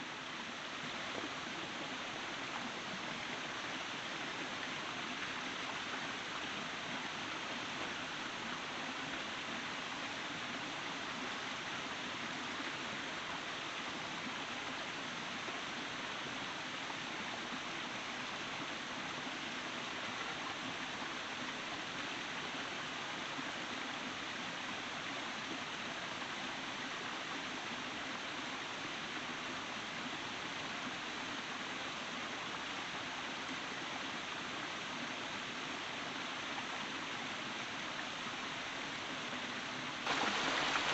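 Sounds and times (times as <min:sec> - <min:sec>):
water rushing: 0:34.4 - 0:40.9.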